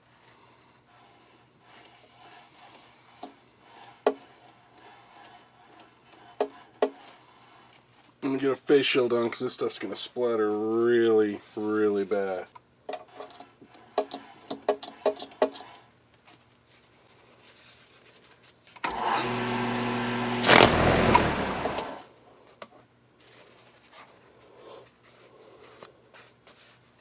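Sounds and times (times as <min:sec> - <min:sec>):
wood lathe motor running: 0:18.9 - 0:22.1.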